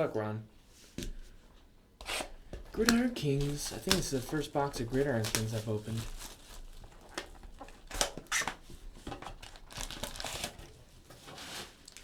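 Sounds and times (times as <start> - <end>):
plastic wrapper crinkling and tearing: 2.8 - 12.0.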